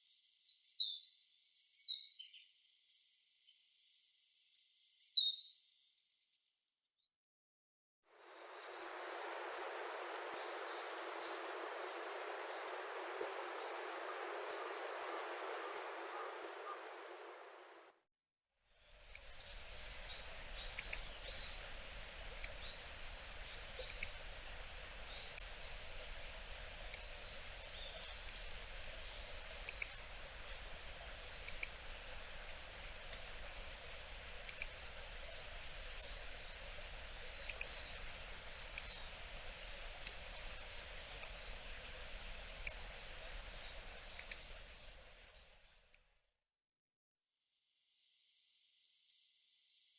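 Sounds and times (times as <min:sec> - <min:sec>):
bird sharp call notes: 0:08.2 - 0:17.7.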